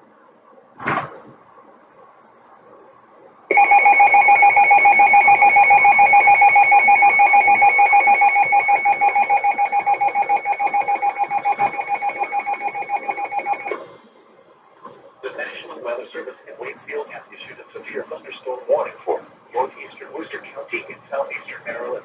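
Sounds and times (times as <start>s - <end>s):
pulsing electronic alarm tone: 3.5s - 13.8s.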